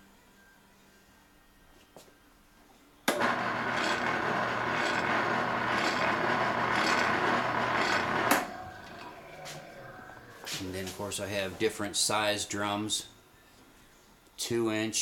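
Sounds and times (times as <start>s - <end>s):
spindle sander motor running: 3.1s - 9.8s.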